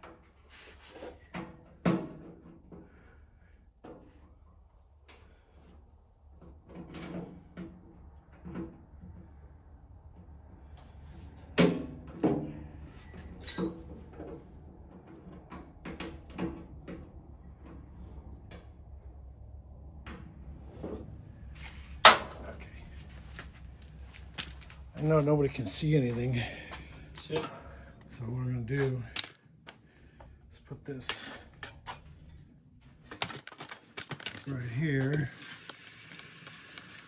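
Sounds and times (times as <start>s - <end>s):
metal tools clanking: 13.3s - 14.0s, 30.9s - 32.6s.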